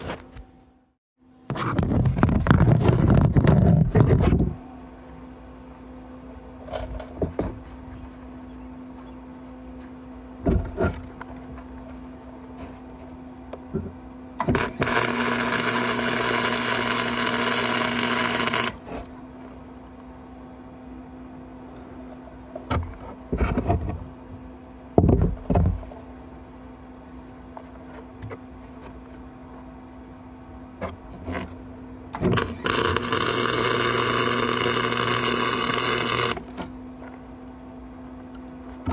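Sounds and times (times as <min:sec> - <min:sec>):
faint steady hum: 0:00.0 - 0:23.1, 0:25.8 - 0:38.9
electric welding arc crackling: 0:14.5 - 0:19.0, 0:32.4 - 0:36.6.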